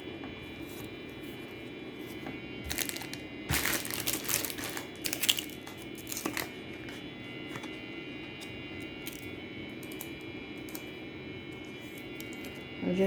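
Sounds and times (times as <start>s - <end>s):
plastic sleeves crinkling: 2.6s - 6.6s.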